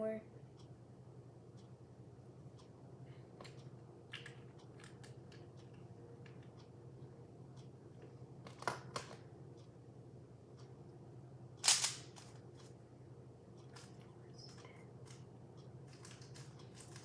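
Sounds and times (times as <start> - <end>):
small plastic parts clicking: 11.6 - 12.7, 15.9 - 17.0.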